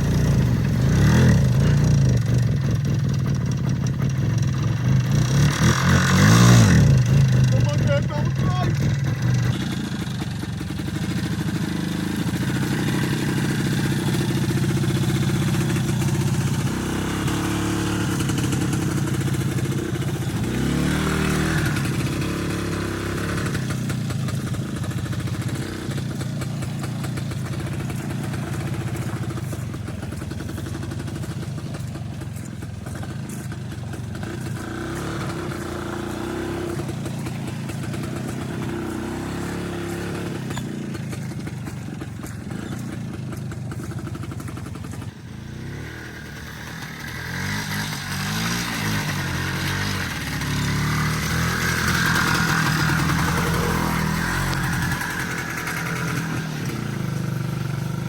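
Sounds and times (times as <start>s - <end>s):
vehicle engine revving under load: 0.0s - 58.0s.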